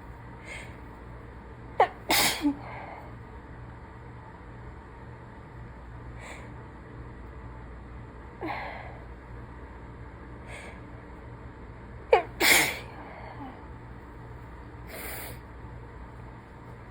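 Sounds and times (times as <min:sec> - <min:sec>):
woman sneezing: 0:01.8 - 0:02.7, 0:12.1 - 0:13.5.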